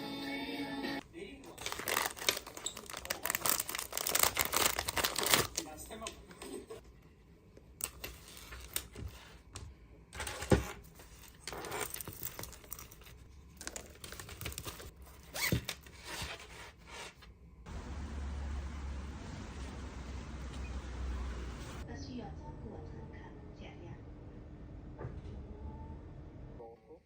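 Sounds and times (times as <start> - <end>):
objects crinkling and scraping: 1.5 - 6.9, 7.8 - 17.4.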